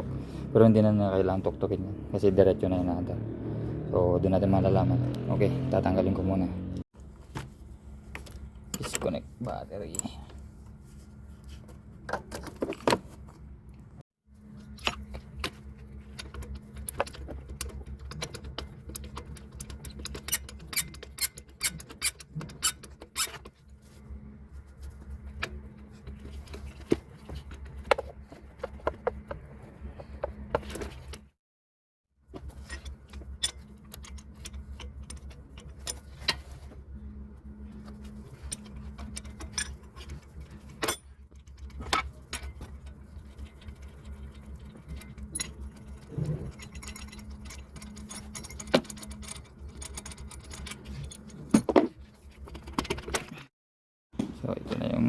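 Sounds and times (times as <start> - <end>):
steady low hum: 32.3 - 52.5
metal tools clinking: 38.4 - 51.8.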